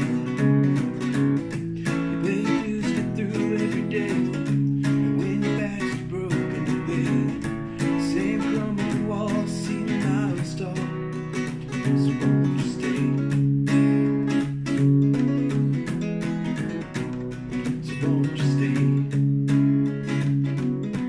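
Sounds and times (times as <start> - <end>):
strummed acoustic guitar: 0.0 - 21.0.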